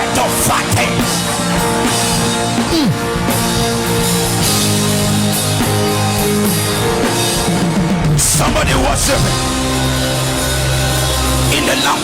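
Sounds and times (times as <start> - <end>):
live band playing worship music: 0.0 - 12.0.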